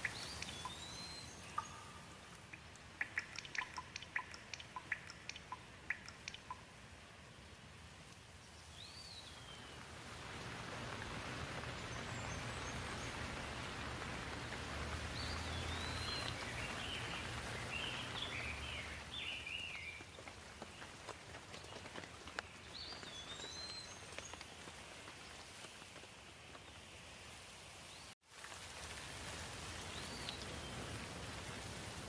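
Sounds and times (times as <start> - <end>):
birds chirping: 0.0 - 6.6, 10.7 - 21.0
steady rain falling: 0.0 - 32.0.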